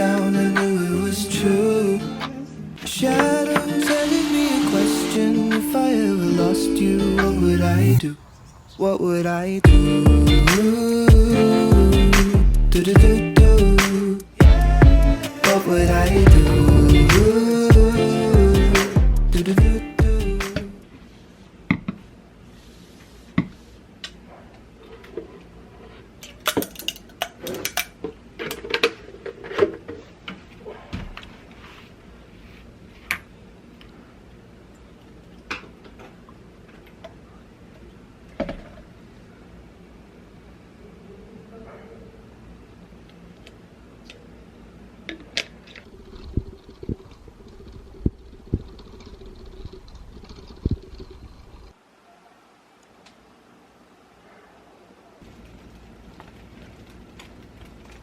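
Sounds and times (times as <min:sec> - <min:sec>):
steady low hum: 0:09.6 - 0:21.0.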